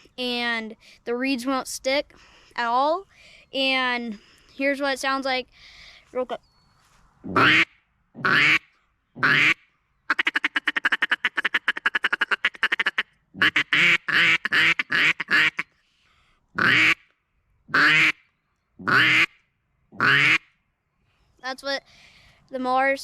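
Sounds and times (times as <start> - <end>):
duck call quacks: 7.3 - 15.7, 16.6 - 17.0, 17.7 - 18.2, 18.8 - 19.3, 20.0 - 20.4.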